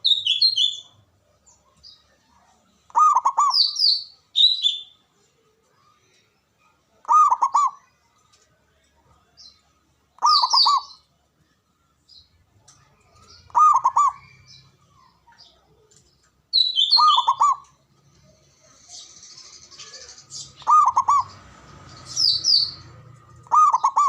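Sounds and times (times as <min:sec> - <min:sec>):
small birds chirping: 0:00.0 - 0:24.0
dove cooing: 0:02.9 - 0:03.6, 0:07.0 - 0:07.9, 0:10.2 - 0:10.9, 0:13.5 - 0:14.3, 0:16.8 - 0:17.7, 0:19.7 - 0:21.4, 0:23.4 - 0:24.0.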